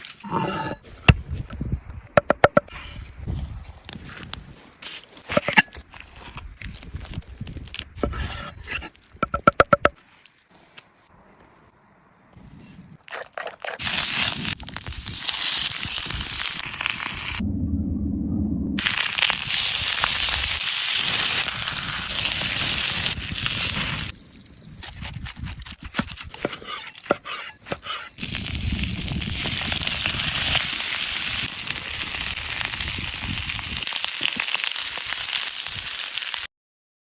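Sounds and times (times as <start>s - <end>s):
sharp crackles and clicks: 3.8s - 10.5s, 13.2s - 17.4s, 18.8s - 26.4s, 28.2s - 36.5s
food sizzling in a pan: 18.8s - 24.1s, 28.3s - 36.5s.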